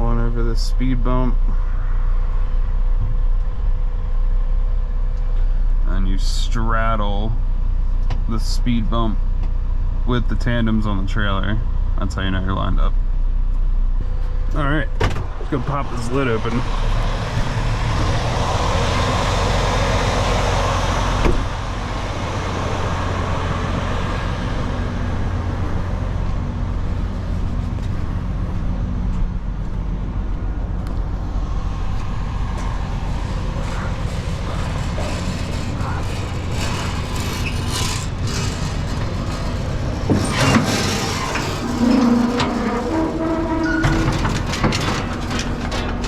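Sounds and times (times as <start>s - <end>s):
diesel truck engine idling: 0.0s - 46.0s
light clatter: 32.0s - 46.0s.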